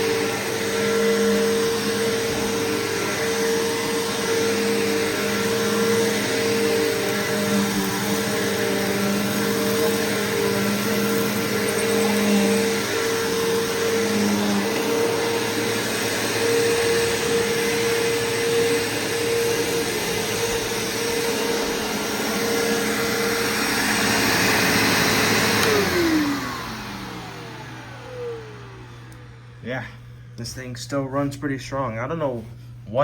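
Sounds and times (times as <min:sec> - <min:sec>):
vacuum cleaner running: 0:00.0 - 0:33.0.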